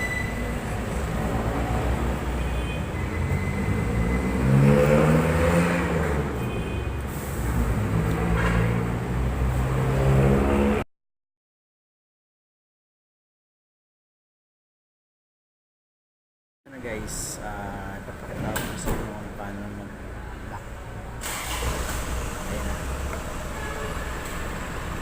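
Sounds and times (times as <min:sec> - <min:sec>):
traffic rumble: 0:00.0 - 0:10.8, 0:16.7 - 0:25.0
vehicle engine revving: 0:00.6 - 0:06.5, 0:07.1 - 0:10.8.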